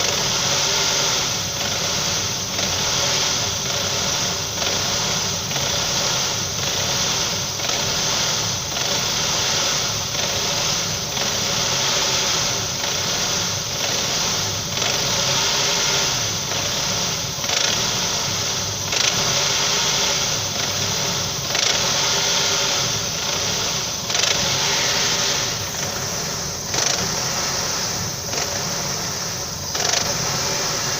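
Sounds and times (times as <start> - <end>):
car engine running: 0.0 - 30.9
engine knock tapping: 1.5 - 15.5, 16.4 - 22.2, 23.2 - 25.0, 25.6 - 27.4, 29.6 - 30.9.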